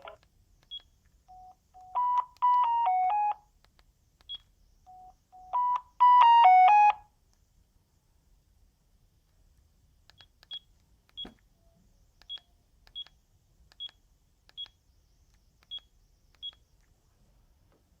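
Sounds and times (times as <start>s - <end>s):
phone keypad beeps: 0.0s - 3.4s, 4.3s - 7.0s.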